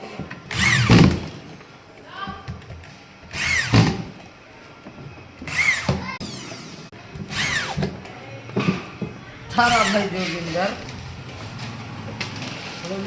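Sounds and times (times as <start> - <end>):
power drill whirring: 0.5 - 1.2, 3.3 - 4.0, 5.5 - 7.8.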